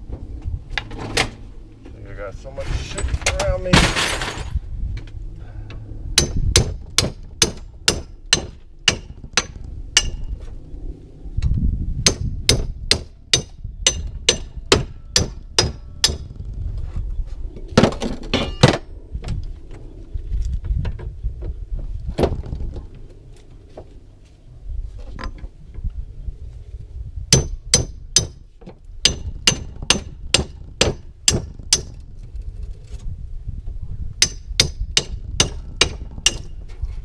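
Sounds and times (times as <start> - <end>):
hammer striking metal: 6.2 - 10.3, 12.1 - 16.3, 27.3 - 28.4, 29.0 - 31.9, 34.2 - 36.5.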